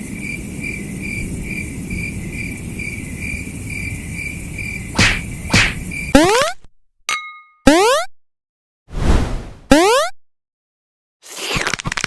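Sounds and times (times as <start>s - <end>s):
cricket chirping: 0.0s - 6.5s.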